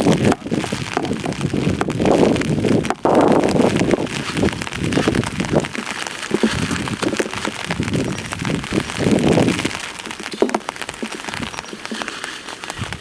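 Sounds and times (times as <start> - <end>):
heavy rain falling: 0.0 - 13.0
raindrops hitting nearby surfaces: 0.0 - 13.0.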